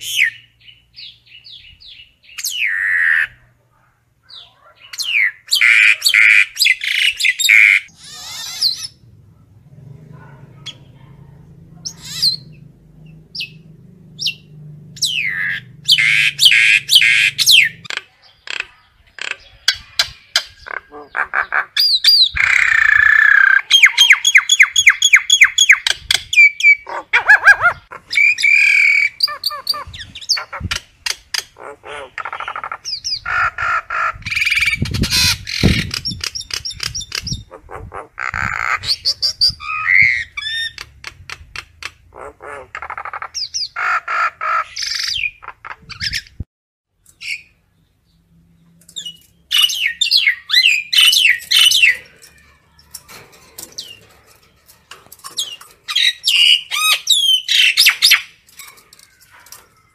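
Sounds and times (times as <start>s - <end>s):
myna squawking and whistling: 4.3s - 9.0s.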